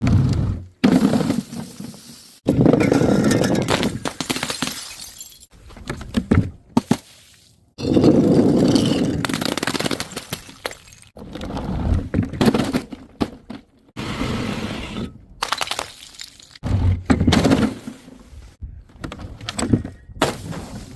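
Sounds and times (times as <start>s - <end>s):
glass bottles smashing: 2.8s - 5.5s, 15.4s - 16.6s
glass shards clattering: 4.6s - 5.5s.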